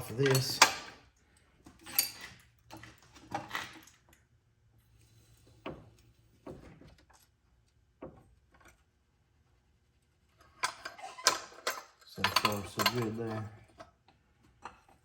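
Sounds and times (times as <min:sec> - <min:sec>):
metal tool clanks and knocks: 0:00.0 - 0:01.0, 0:10.7 - 0:13.9.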